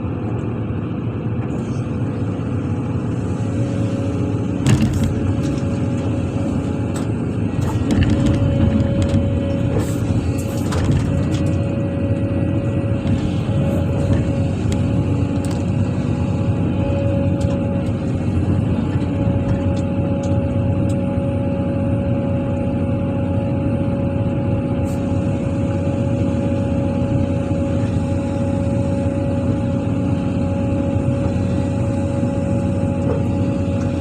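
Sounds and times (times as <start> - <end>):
heavy diesel engine running: 0.0 - 34.0.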